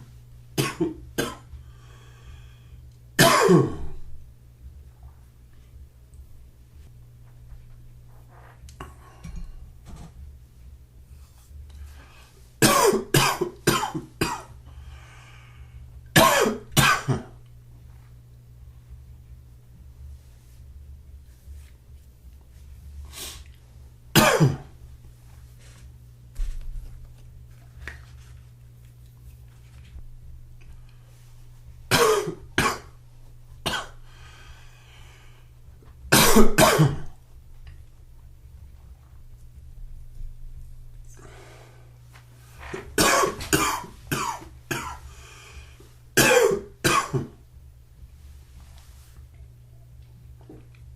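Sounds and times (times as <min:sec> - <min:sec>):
man coughing: 0:00.6 - 0:01.5, 0:03.2 - 0:04.0, 0:12.6 - 0:14.5, 0:16.2 - 0:17.3, 0:24.2 - 0:24.7, 0:31.9 - 0:32.9, 0:36.1 - 0:37.1, 0:43.0 - 0:45.0, 0:46.2 - 0:47.4.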